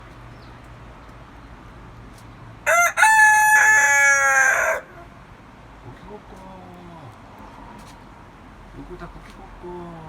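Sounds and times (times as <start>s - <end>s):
rooster crowing: 2.6s - 5.1s.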